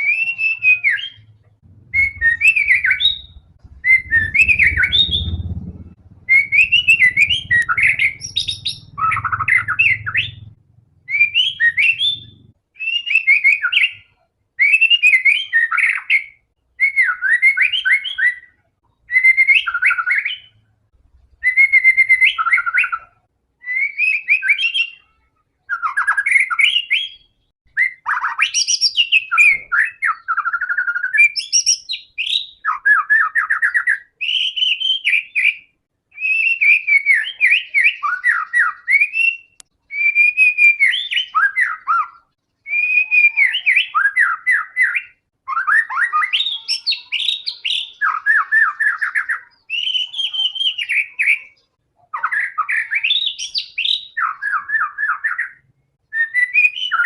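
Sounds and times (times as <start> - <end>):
bird singing whistled phrases: 0.0 - 10.5, 11.1 - 20.6, 21.4 - 57.0
low rumble: 1.2 - 11.2.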